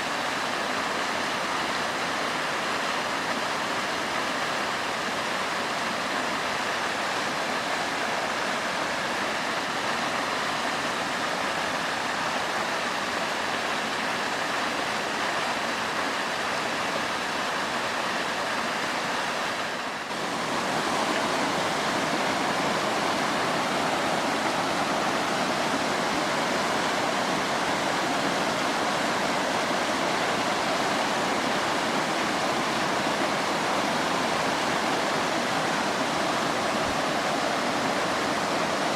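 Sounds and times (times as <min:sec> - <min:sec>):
waterfall pouring: 0:20.1 - 0:38.9.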